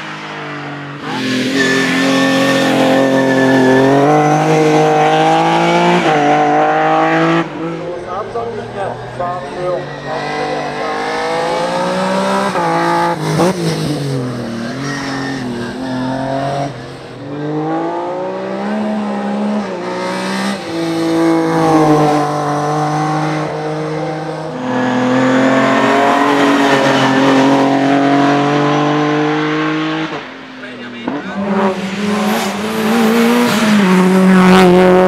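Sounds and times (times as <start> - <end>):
racing car engine revving: 1.0 - 30.3, 31.0 - 35.0.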